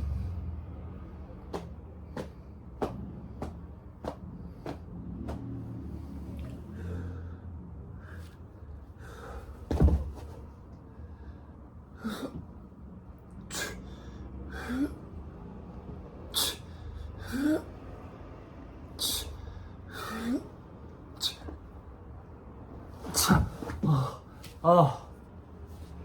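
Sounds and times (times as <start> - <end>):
person breathing hard: 5.9 - 9.7, 13.5 - 15.3, 19.0 - 21.6
person grunting: 23.3 - 25.1.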